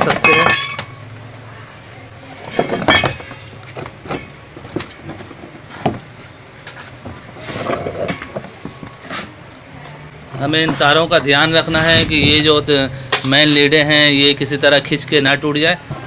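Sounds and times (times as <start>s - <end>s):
body parts knocking and clattering: 2.4s - 7.4s.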